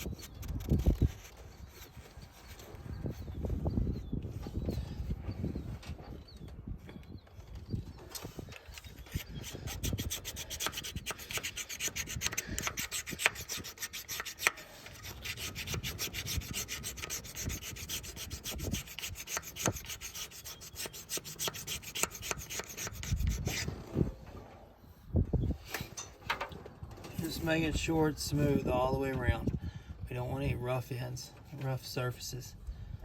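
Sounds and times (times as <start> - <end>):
hand file scraping metal: 8.9 - 23.8.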